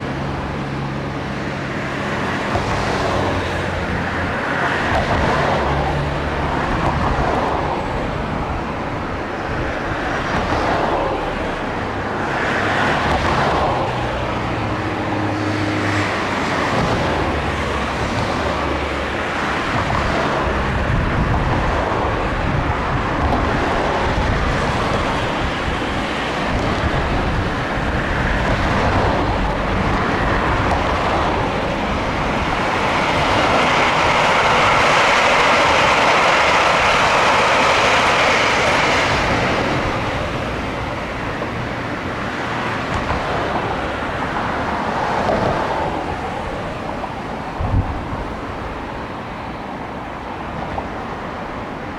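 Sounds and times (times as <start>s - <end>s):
electric train rumbling on rails: 0.0s - 51.9s.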